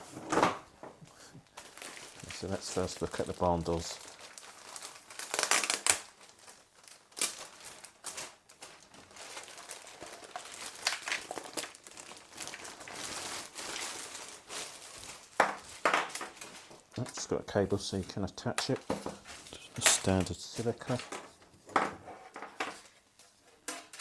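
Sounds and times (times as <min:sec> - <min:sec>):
packaging crinkling: 0:01.4 - 0:17.4, 0:18.6 - 0:21.3.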